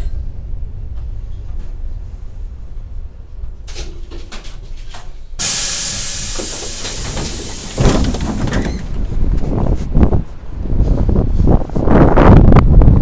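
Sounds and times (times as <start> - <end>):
tram rumble: 0.0 - 13.0
loud hiss: 5.4 - 8.9
tram bogies knocking: 5.9 - 9.5.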